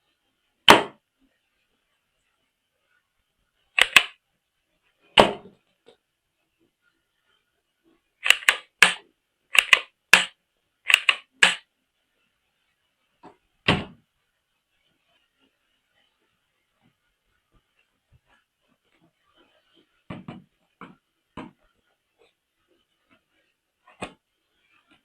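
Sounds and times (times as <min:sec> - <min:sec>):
plastic toy parts clicking: 0:03.8 - 0:04.2, 0:08.2 - 0:10.3, 0:10.9 - 0:11.6.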